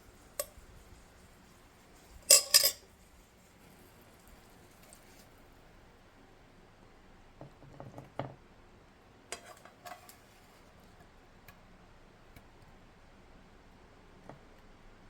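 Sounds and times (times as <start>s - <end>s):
utensils clattering against dishes: 2.2s - 2.9s.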